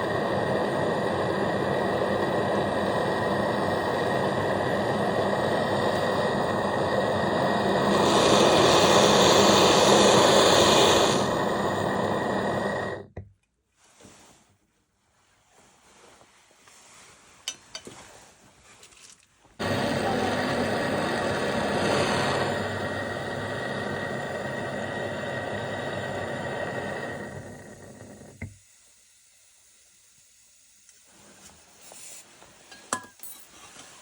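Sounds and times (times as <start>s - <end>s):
torch flame hissing: 0.0s - 13.1s, 19.6s - 33.0s.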